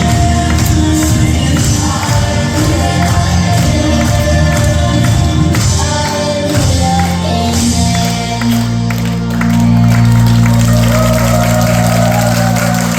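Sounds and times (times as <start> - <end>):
worship song with singing: 0.0 - 9.0.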